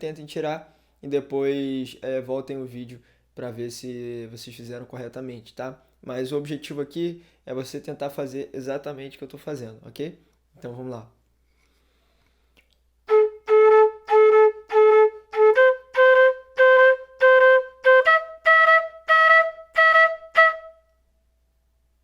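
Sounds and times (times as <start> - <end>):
flute playing detached notes: 13.1 - 20.9.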